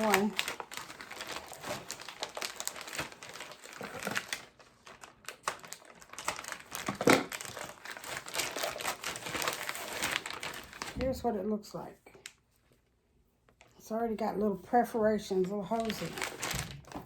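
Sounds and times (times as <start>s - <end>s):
plastic packaging crinkling: 0.0s - 11.3s, 15.1s - 17.0s.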